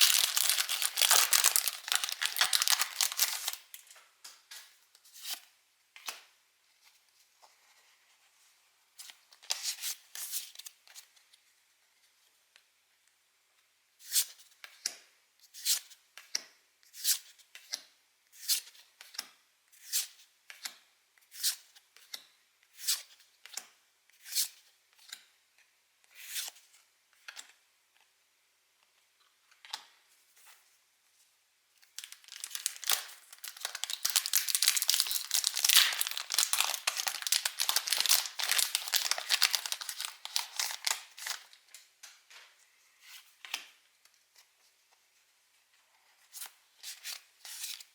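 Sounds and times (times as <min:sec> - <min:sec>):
foil pack tearing and crinkling: 0:00.0 - 0:03.6, 0:32.0 - 0:41.4.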